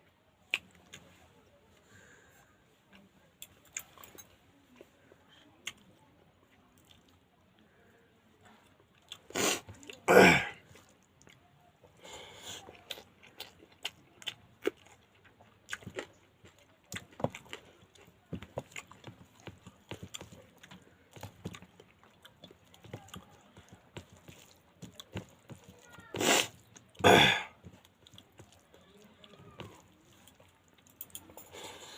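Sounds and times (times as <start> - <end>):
wet chewing and lip smacks: 12.4 - 27.0, 27.6 - 31.5.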